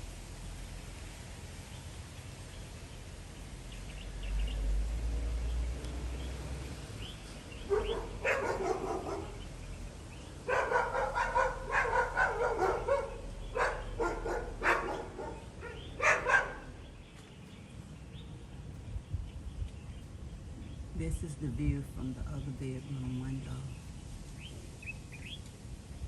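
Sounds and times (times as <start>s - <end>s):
dog barking: 7.7s - 9.4s, 10.4s - 16.8s.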